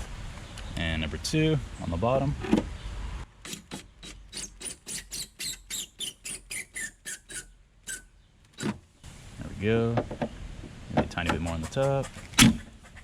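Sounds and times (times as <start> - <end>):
power drill driving a screw: 3.4 - 8.0.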